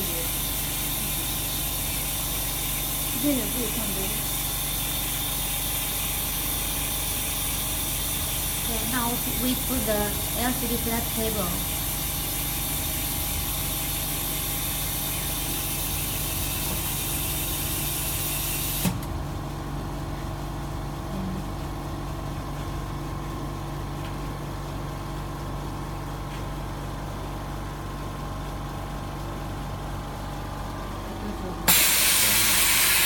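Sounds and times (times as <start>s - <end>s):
vacuum hissing: 0.0s - 13.0s, 31.7s - 33.0s
machine mechanical hum: 0.0s - 33.0s.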